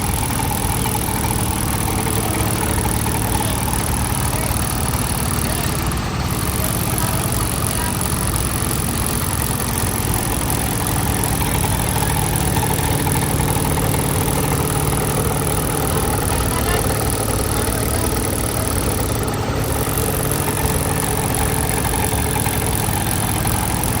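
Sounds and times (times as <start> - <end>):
compaction machine engine pulsing: 0.0 - 24.0.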